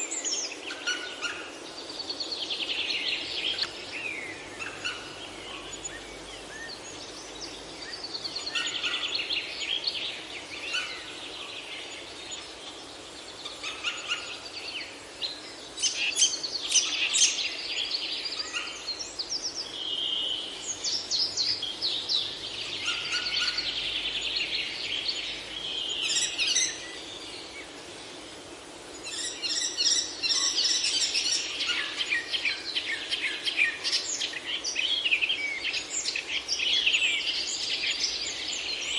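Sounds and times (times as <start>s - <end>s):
songbirds chirping and trilling: 0.0s - 38.9s
steady low hiss: 0.0s - 38.9s.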